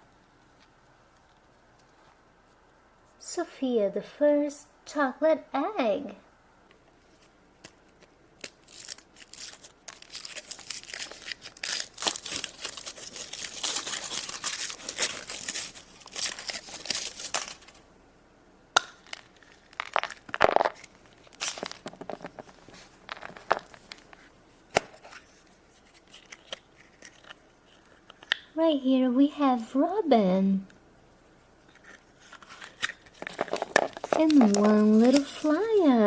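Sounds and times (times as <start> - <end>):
foil wrapper crinkling and tearing: 7.0 - 17.8, 18.9 - 28.0, 31.9 - 35.8
chocolate egg cracking open: 7.6 - 17.8, 18.7 - 22.4, 25.9 - 28.5, 31.8 - 35.4.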